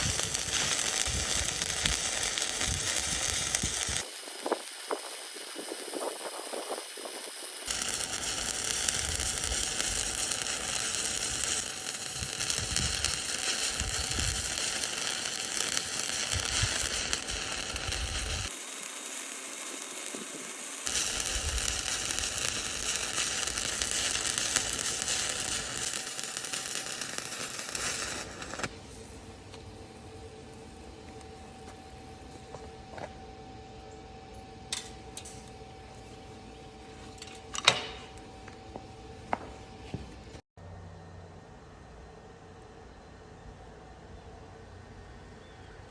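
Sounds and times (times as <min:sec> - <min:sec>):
welding arc hissing: 0:00.0 - 0:31.8.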